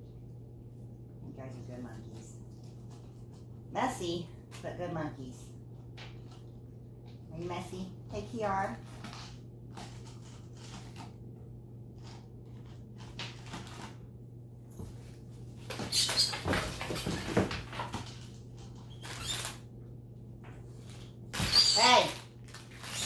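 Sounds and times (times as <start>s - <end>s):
steady low hum: 0.0s - 23.0s
small clicks and rustles: 8.8s - 11.2s, 12.0s - 14.0s, 22.1s - 23.0s.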